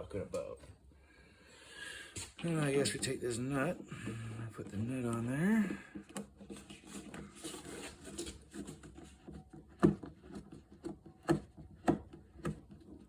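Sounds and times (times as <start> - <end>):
rubbing and rustling of parts: 2.2 - 13.0
sharp clicks and knocks: 8.0 - 13.0.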